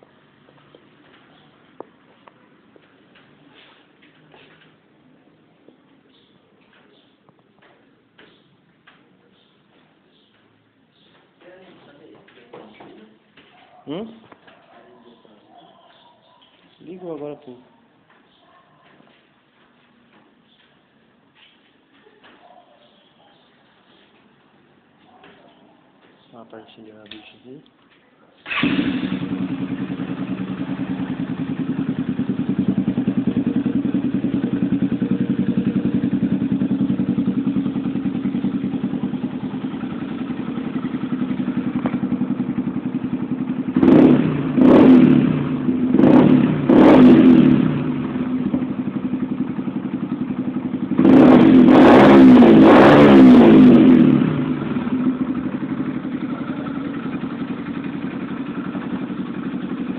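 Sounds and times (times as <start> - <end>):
motorcycle engine idling and revving: 0.0 - 9.0, 28.4 - 59.9.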